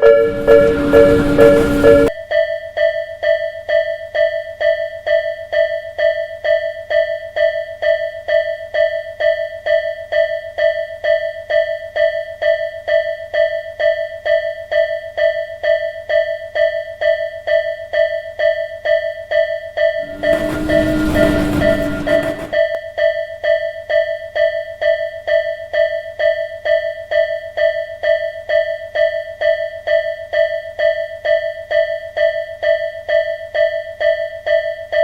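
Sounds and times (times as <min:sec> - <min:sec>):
level crossing warning bell: 0:00.0 - 0:02.1, 0:20.0 - 0:22.7.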